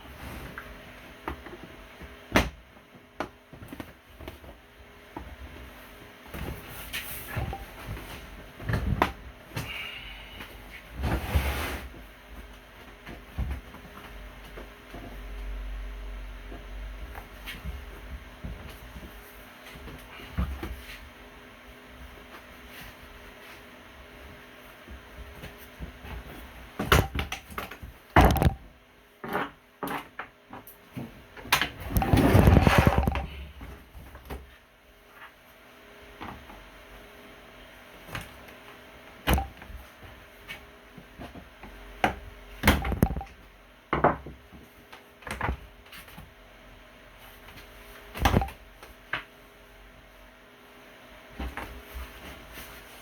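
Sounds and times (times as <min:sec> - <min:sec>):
faint steady hum: 0:00.0 - 0:29.2
rustling scrape: 0:11.0 - 0:12.0, 0:31.9 - 0:33.3.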